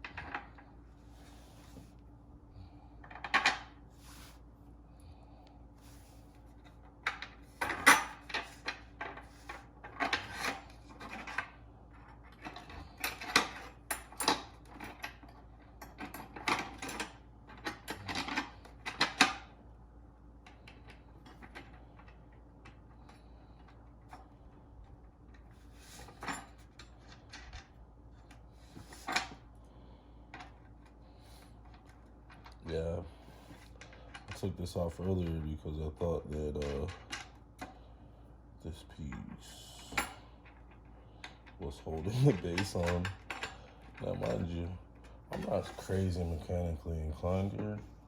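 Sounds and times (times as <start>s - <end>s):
metal parts clanking and scraping: 7.5s - 11.5s.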